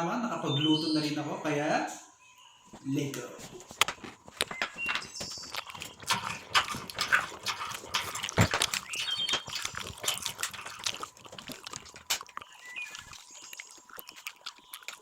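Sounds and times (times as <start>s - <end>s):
mouth clicks and smacks: 3.4s - 15.0s
person chewing: 3.5s - 15.0s.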